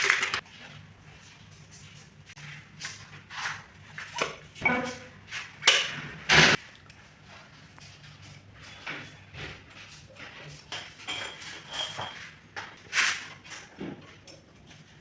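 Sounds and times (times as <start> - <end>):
plumbing parts scraping and clicking: 0.0 - 0.4.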